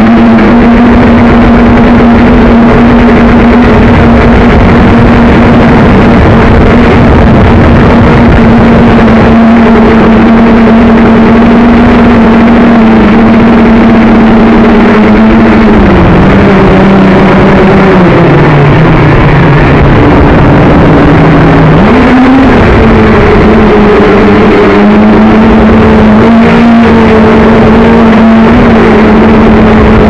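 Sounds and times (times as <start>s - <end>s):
drone motors whining: 0.0s - 30.0s
wind noise: 0.0s - 30.0s.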